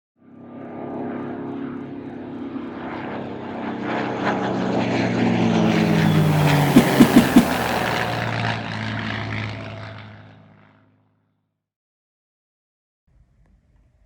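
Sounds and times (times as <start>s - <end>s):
propeller aircraft engine passing: 5.7s - 8.3s.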